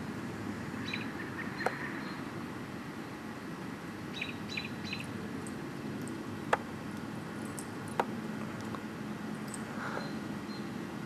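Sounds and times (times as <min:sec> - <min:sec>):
bird chirping: 0:00.7 - 0:02.3, 0:04.1 - 0:06.6, 0:09.5 - 0:10.9.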